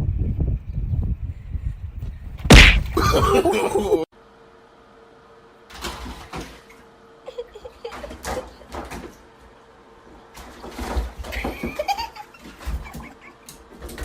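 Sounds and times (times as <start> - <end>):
sharp loud smack: 2.5 - 3.1.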